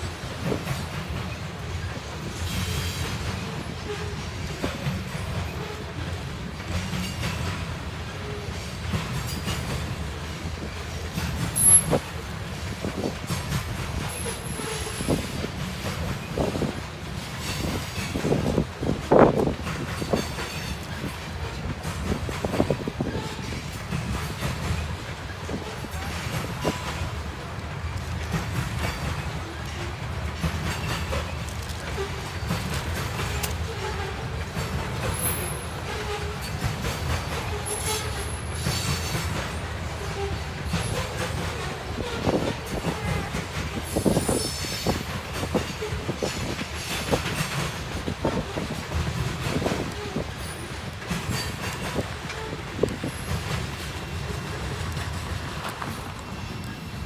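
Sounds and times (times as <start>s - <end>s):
freight train rumbling: 0.0s - 57.0s
wheels clicking over rail joints: 0.1s - 56.8s
high-pitched wheel squeals: 37.5s - 39.1s, 43.9s - 45.1s.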